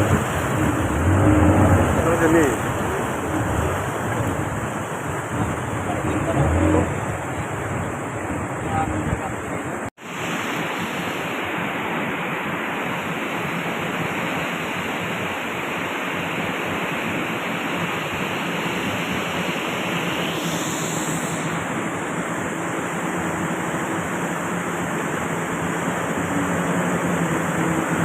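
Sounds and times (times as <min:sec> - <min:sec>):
boat motor running: 0:00.0 - 0:09.9, 0:18.7 - 0:28.0
rushing wind and water: 0:00.0 - 0:28.0.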